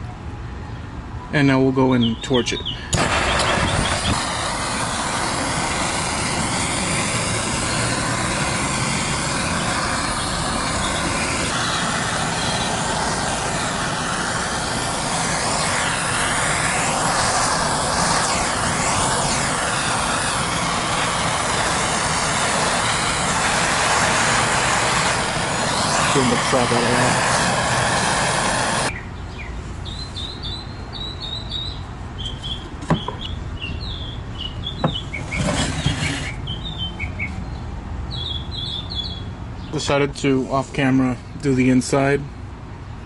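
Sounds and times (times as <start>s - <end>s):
gas torch flame rushing: 2.9s - 28.9s, 34.8s - 36.6s.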